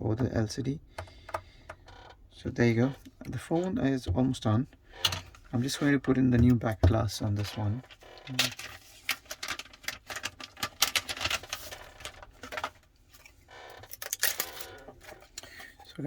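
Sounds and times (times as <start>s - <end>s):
small parts and tools clicking: 12.5s - 15.5s.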